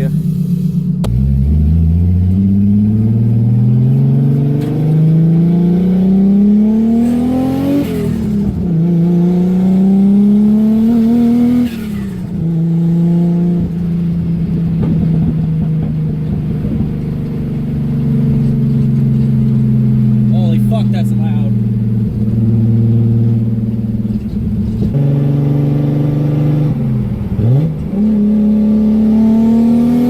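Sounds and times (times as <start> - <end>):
car engine accelerating: 0.0 - 30.0.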